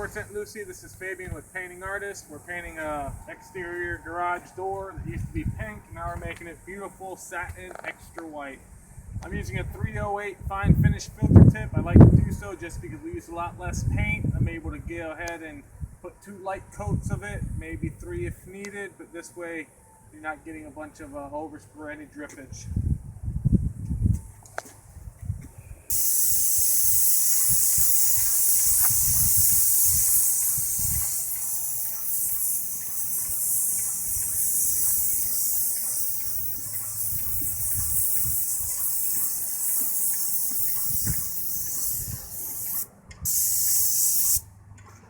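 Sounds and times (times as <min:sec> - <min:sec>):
paint sprayer hissing: 0:00.0 - 0:04.5, 0:25.9 - 0:44.4.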